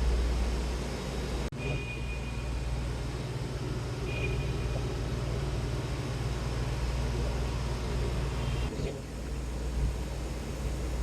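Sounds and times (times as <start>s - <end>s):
thin high whine: 1.5s - 8.7s.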